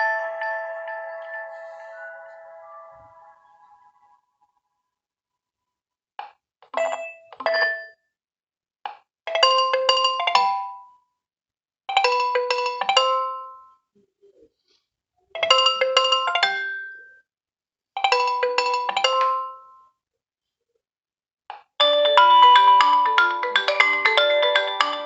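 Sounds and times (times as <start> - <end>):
phone ringtone chime notes: 0.0 - 3.9, 21.8 - 25.0.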